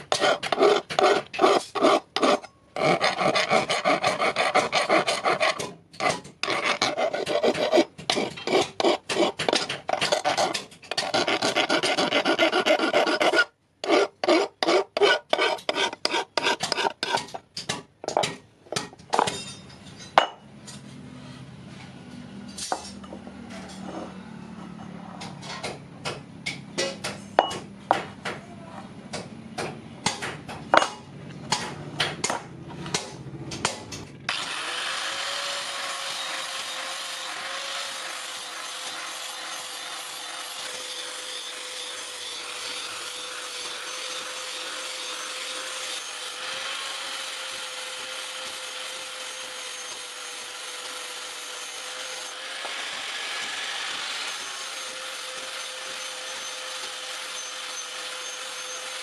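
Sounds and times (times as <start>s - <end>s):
hand file rasping: 0.0s - 17.8s.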